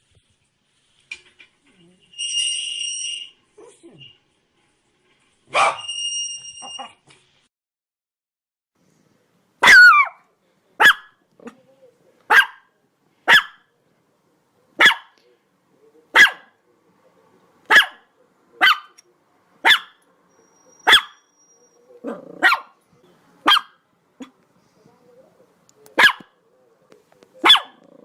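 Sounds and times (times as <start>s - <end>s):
dog barking: 5.5s - 5.9s, 9.6s - 10.2s, 10.8s - 11.6s, 12.3s - 13.7s, 14.8s - 15.2s, 16.1s - 16.6s, 17.7s - 19.0s, 19.6s - 20.0s, 20.8s - 21.2s, 22.0s - 22.8s, 23.4s - 24.3s, 26.0s - 26.4s, 27.4s - 27.8s.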